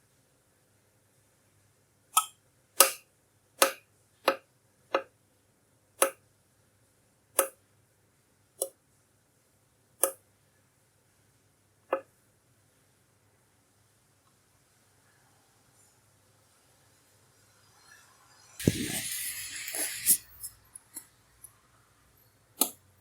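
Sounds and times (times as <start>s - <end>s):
electric heating pan popping: 18.6s - 20.5s.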